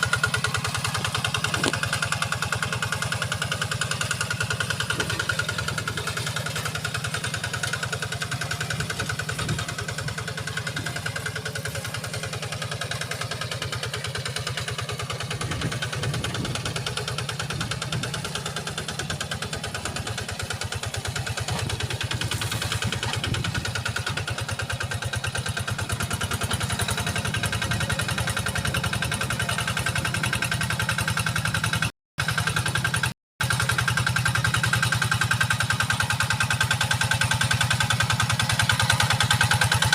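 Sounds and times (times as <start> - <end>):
diesel engine thudding: 0.0 - 31.8.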